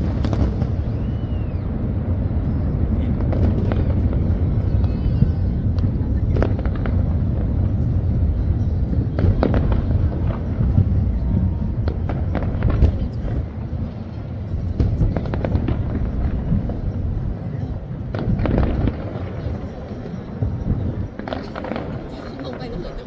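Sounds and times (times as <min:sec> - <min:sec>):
fireworks bangs and crackles: 0:00.0 - 0:23.0
low rumble: 0:00.0 - 0:23.0.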